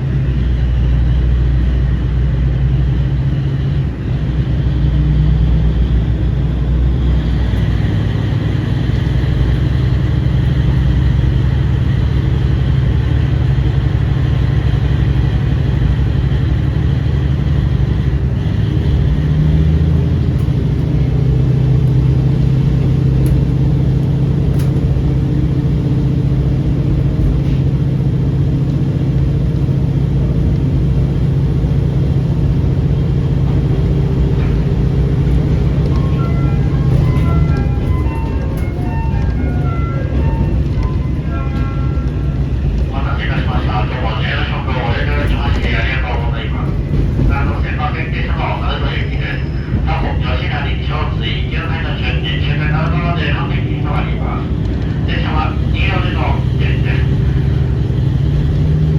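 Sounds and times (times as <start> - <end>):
diesel railcar engine running: 0.0 - 58.9.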